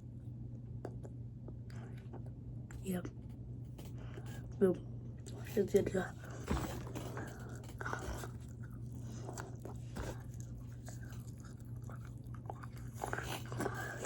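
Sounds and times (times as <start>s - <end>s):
steady low hum: 0.0s - 14.0s
person chewing crunchy fries: 6.2s - 14.0s.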